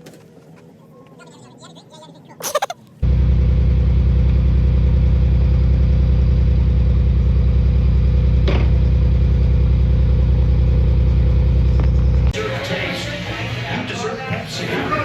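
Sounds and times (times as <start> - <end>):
car engine idling: 3.0 - 12.4.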